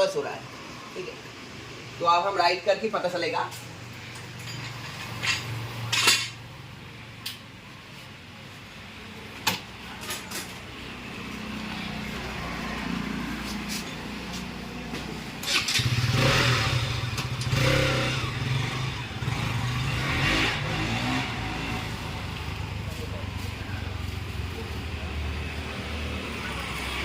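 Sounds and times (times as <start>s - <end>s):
motorcycle engine starting and running: 9.4s - 27.0s.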